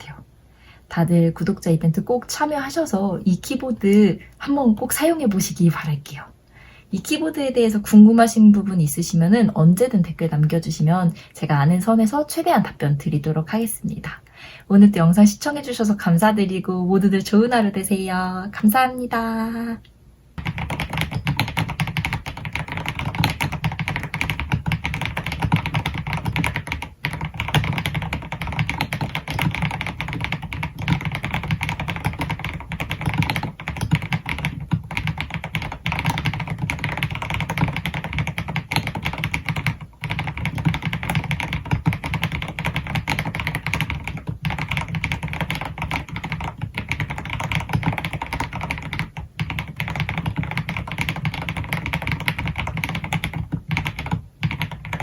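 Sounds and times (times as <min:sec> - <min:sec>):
fast typing on mechanical keyboard: 0:20.4 - 0:55.0.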